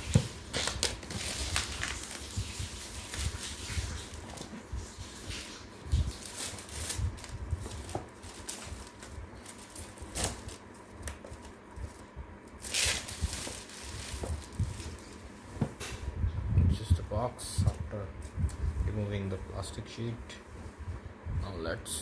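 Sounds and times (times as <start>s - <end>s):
plastic wrapping crinkling: 0.0s - 15.4s.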